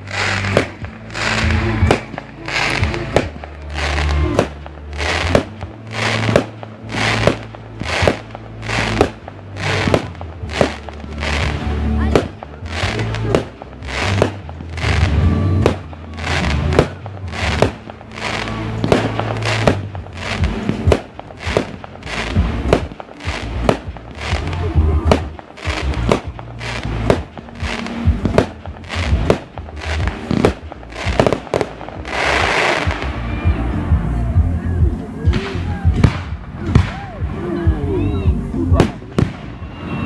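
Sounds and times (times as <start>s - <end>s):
fireworks bangs and cracks: 0.0s - 40.0s
music playing: 0.0s - 40.0s.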